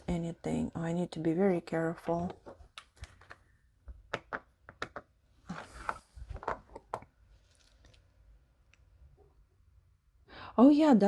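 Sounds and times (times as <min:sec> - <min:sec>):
jewelry clicking and tapping: 0:02.8 - 0:05.2.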